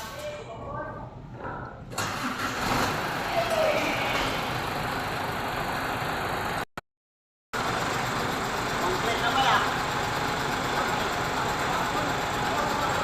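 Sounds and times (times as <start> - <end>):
diesel truck engine running: 2.0 - 6.7, 7.6 - 13.0.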